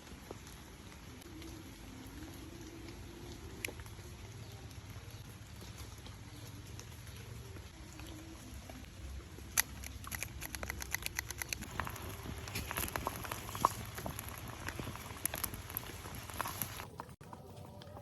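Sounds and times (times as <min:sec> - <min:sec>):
sharp clicks and crackles: 0:08.7 - 0:17.2.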